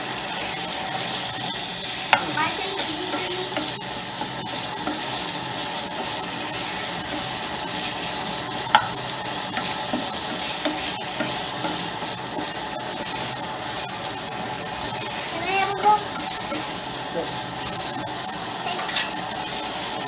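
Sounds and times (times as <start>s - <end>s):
chicken sizzling in oil: 0.0s - 20.0s.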